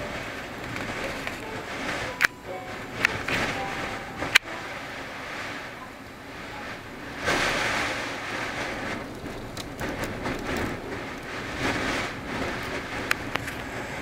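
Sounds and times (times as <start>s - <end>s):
blizzard wind gusting: 0.0s - 14.0s
faint clicks: 8.6s - 13.9s.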